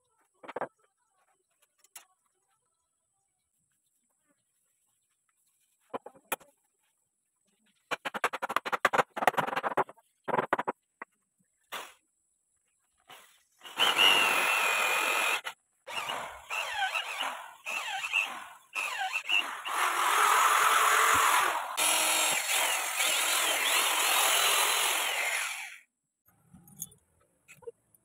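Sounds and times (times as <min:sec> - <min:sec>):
power tool cutting with squeal: 0:13.6 - 0:19.9.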